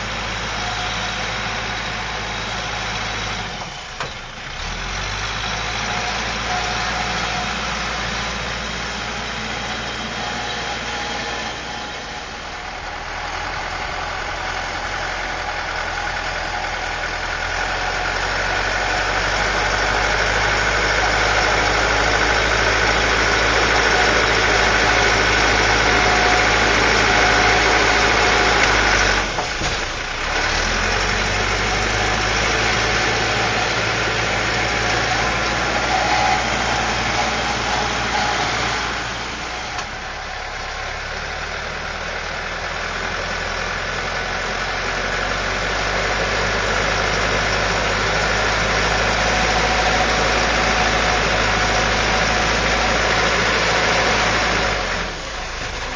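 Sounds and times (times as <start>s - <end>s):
diesel engine running: 0.0s - 55.9s
high-pitched whine: 31.6s - 41.0s.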